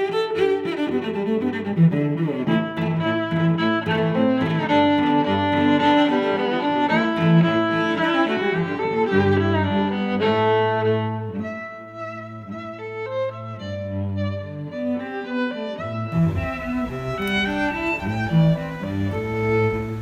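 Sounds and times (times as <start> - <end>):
bowed strings music: 0.0 - 20.0.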